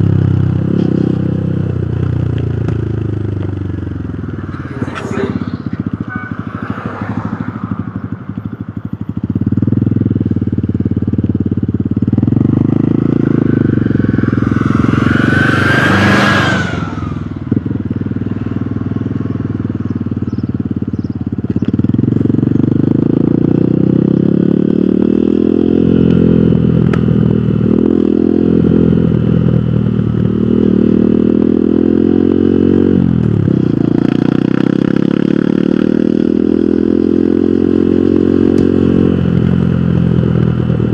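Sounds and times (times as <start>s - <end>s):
motorcycle engine running: 0.0s - 40.9s
loud whoosh: 4.3s - 7.9s, 12.9s - 17.5s.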